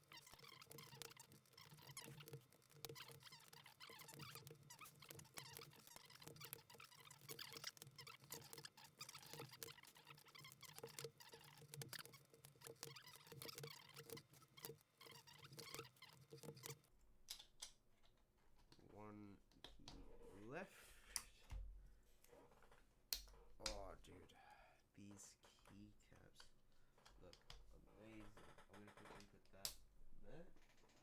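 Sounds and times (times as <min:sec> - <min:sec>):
keycaps clicking and clattering: 0:00.0 - 0:16.9.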